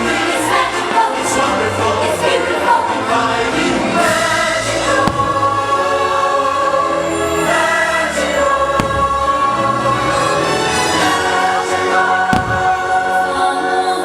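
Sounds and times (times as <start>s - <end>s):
choir singing: 0.0s - 14.0s
orchestral music: 0.0s - 14.0s
short sharp pops: 5.0s - 5.8s, 8.8s - 9.5s, 12.4s - 13.0s.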